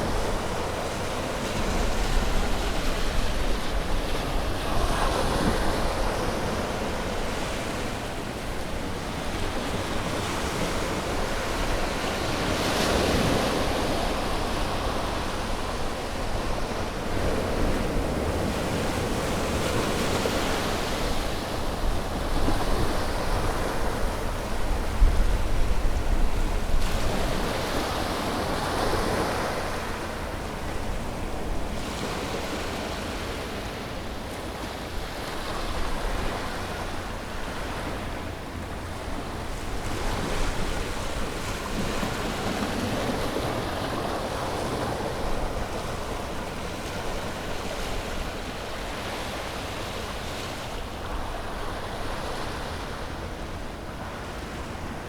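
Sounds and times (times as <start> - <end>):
wind rumble on microphone: 0.0 - 33.0
sea waves breaking on shore: 0.0 - 55.0.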